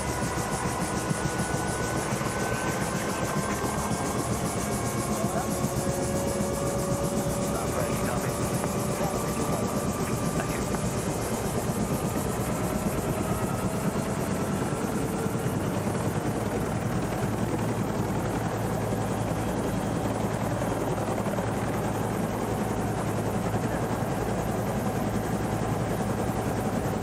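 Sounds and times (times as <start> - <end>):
helicopter rotor and engine: 0.0 - 27.0.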